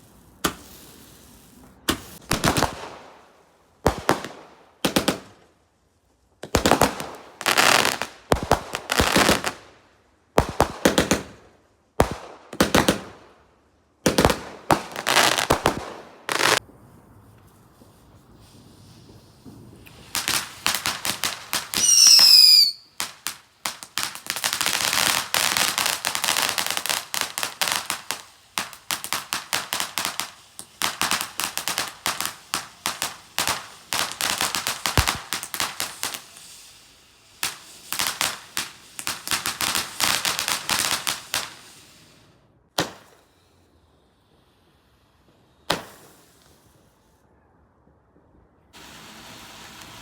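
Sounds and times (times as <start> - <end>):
fireworks crackling bangs: 0.0 - 5.6, 6.4 - 9.7, 10.3 - 11.4, 12.0 - 13.4, 14.0 - 47.1, 48.7 - 50.0
firework whistle falling: 21.6 - 23.0.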